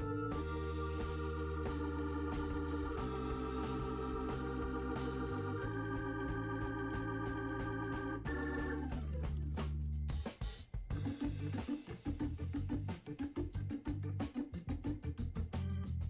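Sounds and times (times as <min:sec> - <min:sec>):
organ-like chords: 0:00.0 - 0:09.7
pulsing low bass line: 0:00.0 - 0:10.1.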